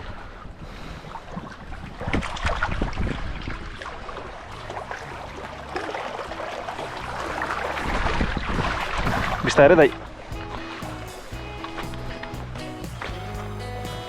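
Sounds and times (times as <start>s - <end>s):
wind buffeting microphone: 0.0s - 5.2s, 6.2s - 12.6s
water lapping at shore: 0.0s - 14.0s.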